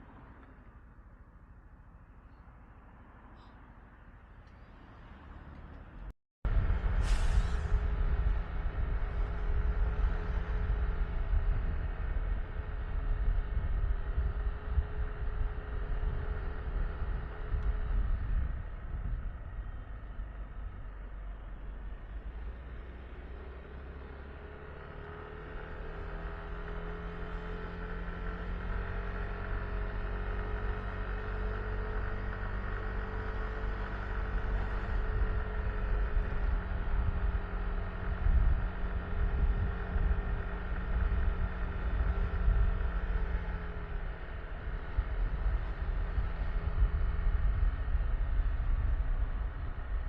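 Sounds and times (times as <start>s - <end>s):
wind buffeting microphone: 6.5s - 20.9s, 33.6s - 50.0s.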